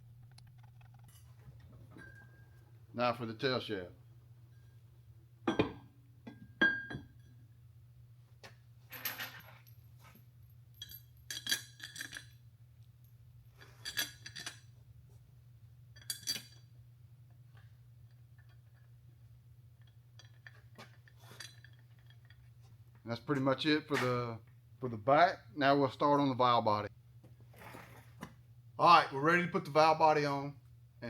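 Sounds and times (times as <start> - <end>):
metal parts clinking and ringing: 8.9 - 12.4, 13.6 - 14.7, 15.9 - 16.7, 19.8 - 22.5.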